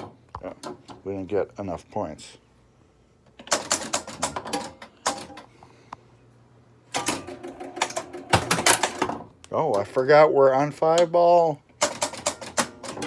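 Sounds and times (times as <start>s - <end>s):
pinball machine relays clattering: 3.4s - 5.5s, 6.9s - 9.9s, 11.8s - 13.0s.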